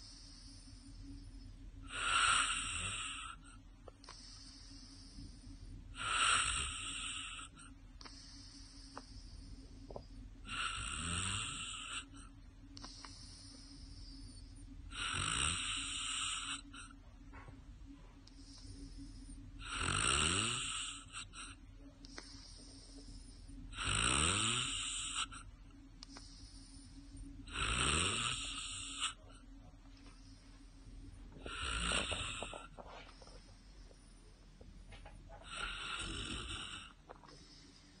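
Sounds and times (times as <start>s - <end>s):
quiet breathing: 0.0s - 38.0s
person snoring loudly: 1.9s - 3.4s, 6.0s - 7.6s, 10.5s - 12.2s, 14.9s - 16.9s, 19.6s - 21.5s, 23.7s - 25.4s, 27.4s - 29.2s, 31.4s - 32.8s, 35.4s - 37.0s.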